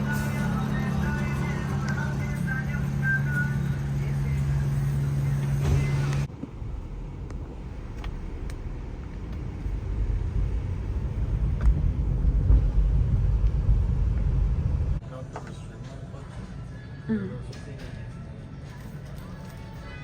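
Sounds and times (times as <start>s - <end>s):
music: 0.0s - 6.3s, 15.8s - 20.0s
car rumbling on the move: 0.0s - 15.0s.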